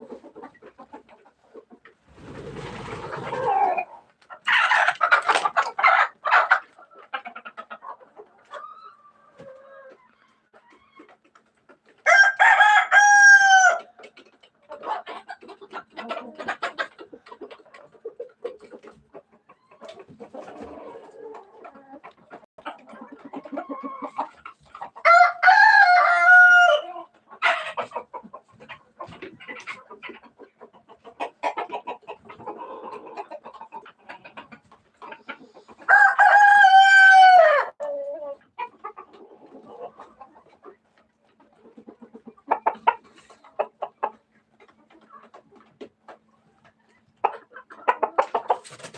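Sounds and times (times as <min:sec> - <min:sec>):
chickens clucking: 0:00.0 - 0:48.9
rooster crowing: 0:12.1 - 0:13.8, 0:25.0 - 0:26.8, 0:35.9 - 0:37.8.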